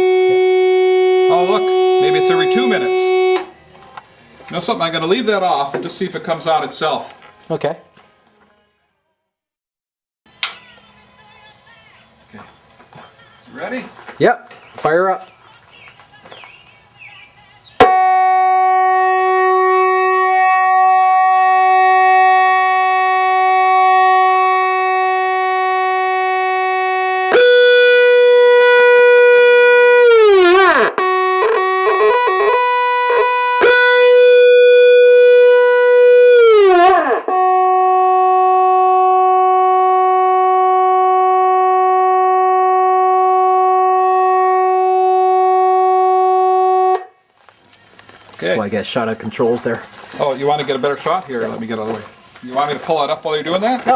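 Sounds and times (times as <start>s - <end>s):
electric fog horn: 0.0s - 3.6s, 17.8s - 47.2s.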